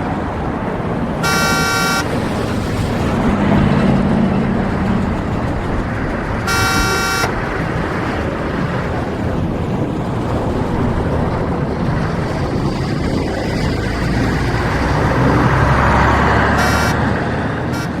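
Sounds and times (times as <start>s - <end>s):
city street traffic: 0.0s - 18.0s
low engine rumble: 0.0s - 18.0s
car horn honking: 1.2s - 2.3s, 6.4s - 7.5s, 16.4s - 18.0s.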